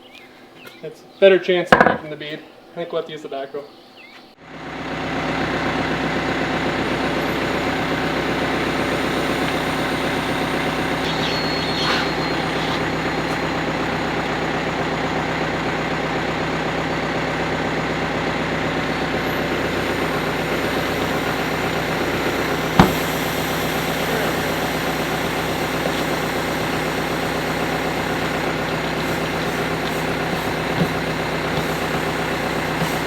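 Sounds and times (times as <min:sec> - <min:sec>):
small knock: 0:01.8 - 0:02.1, 0:22.8 - 0:23.1
diesel engine running steadily: 0:04.4 - 0:33.0.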